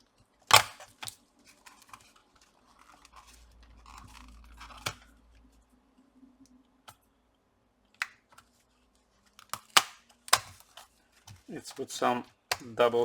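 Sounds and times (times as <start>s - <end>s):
plastic case clicks and snaps: 0.5s - 1.2s, 9.4s - 10.6s.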